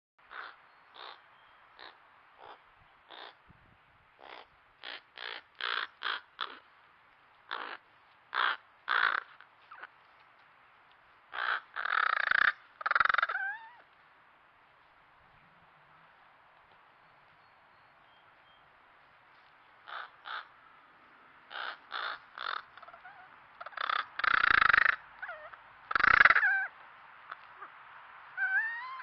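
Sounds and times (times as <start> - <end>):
crows cawing: 0.3 - 1.2, 1.8 - 3.4, 4.2 - 6.7, 7.5 - 9.9, 11.3 - 13.9, 19.8 - 20.6, 21.5 - 29.0.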